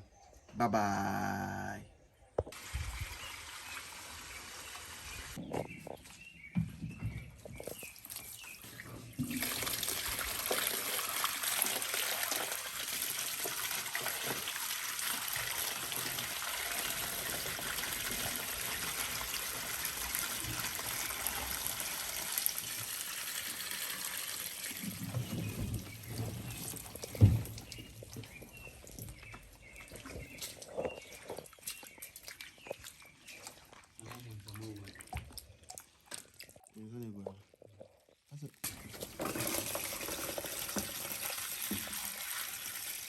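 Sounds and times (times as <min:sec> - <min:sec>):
water pouring: 0:07.7 - 0:36.8, 0:38.0 - 0:43.0
low bumps: 0:24.8 - 0:29.6.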